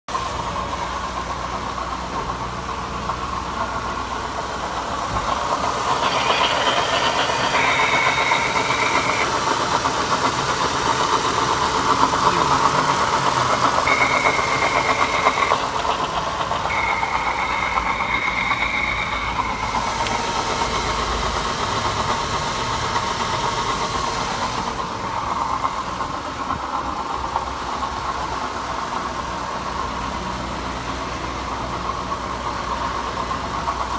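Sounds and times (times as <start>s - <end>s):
car engine running: 0.1s - 33.9s
thin high tone: 5.0s - 10.0s, 12.0s - 22.1s.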